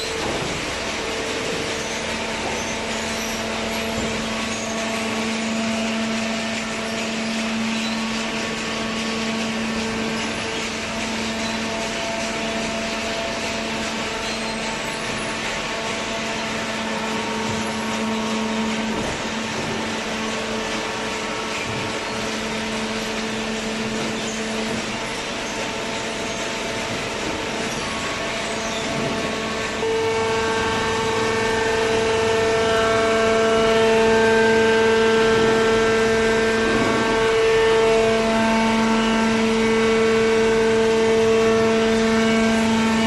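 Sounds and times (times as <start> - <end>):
electric motor and pump humming: 0.0 - 43.0.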